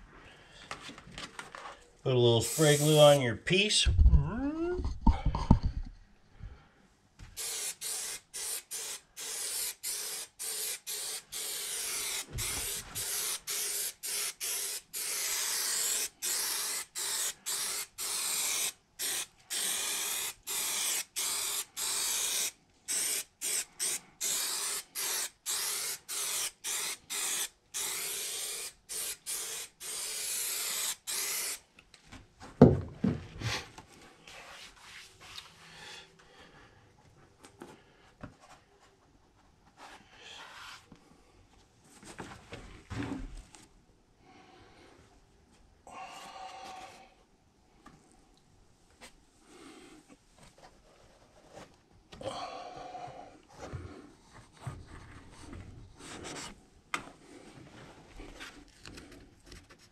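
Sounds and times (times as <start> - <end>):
spray can hissing bursts: 2.4 - 3.2, 7.4 - 31.6.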